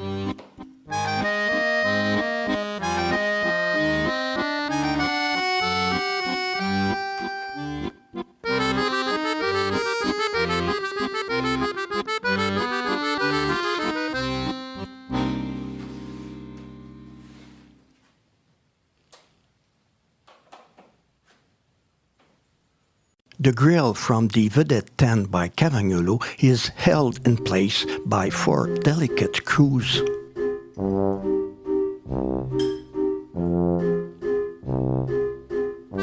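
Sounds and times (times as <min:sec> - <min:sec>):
accordion playing a tune: 0:00.0 - 0:17.7, 0:23.6 - 0:32.0.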